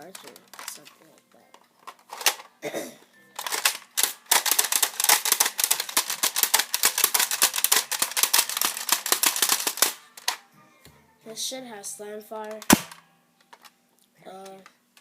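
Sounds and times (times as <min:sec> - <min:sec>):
toy dart blaster clicking: 0:03.4 - 0:10.4, 0:12.6 - 0:13.0.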